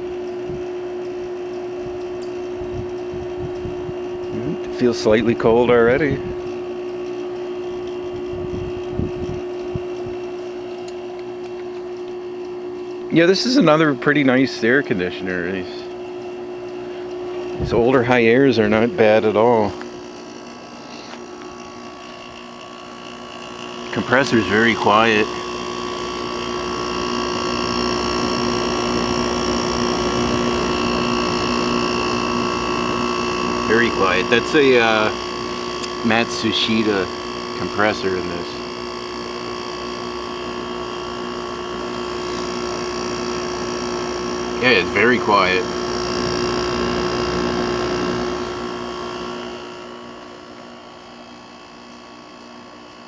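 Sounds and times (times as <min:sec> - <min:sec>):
air conditioner humming: 0:00.0 - 0:53.0
fan rushing air: 0:00.0 - 0:53.0.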